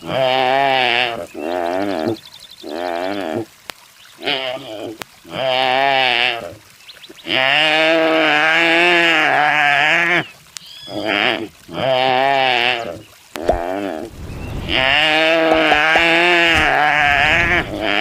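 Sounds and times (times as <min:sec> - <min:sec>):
deer bleating: 0:14.7 - 0:18.0.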